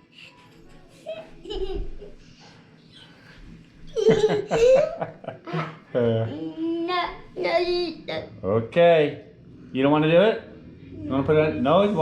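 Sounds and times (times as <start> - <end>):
young child laughing: 0.4 - 2.2, 3.9 - 6.6.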